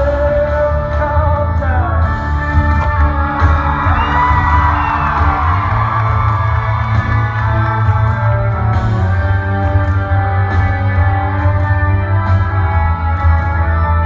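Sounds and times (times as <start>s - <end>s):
live band music: 0.0s - 14.0s
audience whooping and cheering: 2.9s - 8.9s.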